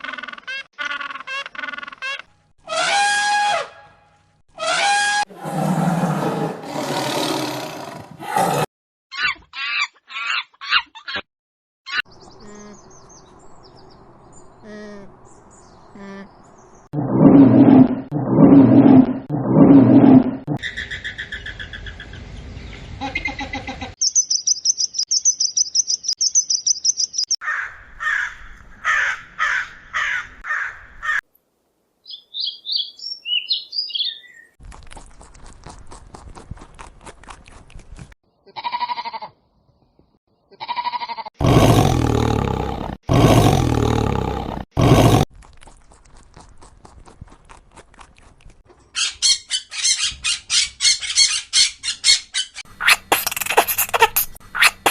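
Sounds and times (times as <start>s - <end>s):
bird twitters: 24.0s - 27.4s
high animal trill: 40.6s - 48.2s, 52.6s - 54.9s
fast high chirping: 52.8s - 54.9s.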